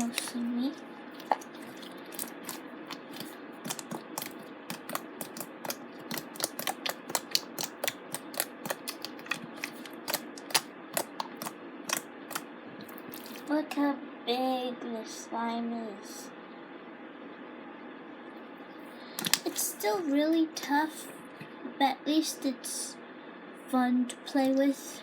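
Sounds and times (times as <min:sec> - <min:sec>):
slime clicking and popping: 0:01.2 - 0:12.4.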